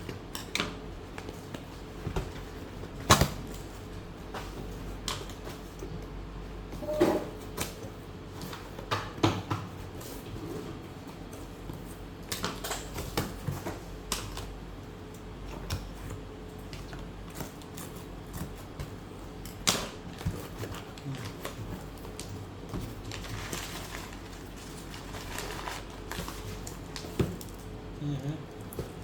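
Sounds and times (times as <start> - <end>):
packaging rustling: 19.5 - 27.8.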